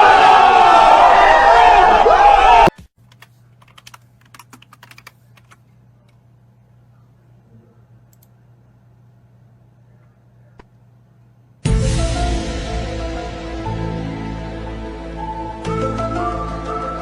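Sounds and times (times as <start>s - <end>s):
faint steady hum: 3.0s - 11.7s
loud music: 11.6s - 17.0s.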